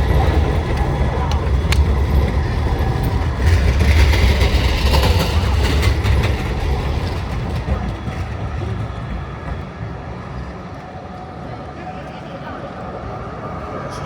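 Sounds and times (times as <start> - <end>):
tram wheel clicks: 0.0 - 8.8
tram rumbling on rails: 0.0 - 14.0.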